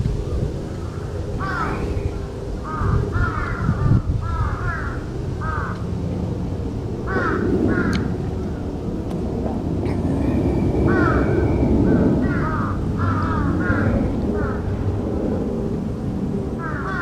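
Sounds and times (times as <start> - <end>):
steady low rumble: 0.0 - 17.0
crow cawing: 0.8 - 5.8, 7.0 - 8.1, 9.9 - 14.7, 16.6 - 17.0.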